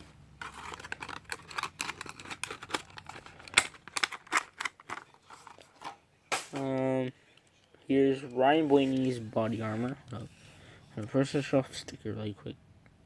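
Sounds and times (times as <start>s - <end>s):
packaging snap: 0.4s - 5.0s
packaging crinkling and clicking: 0.4s - 6.0s.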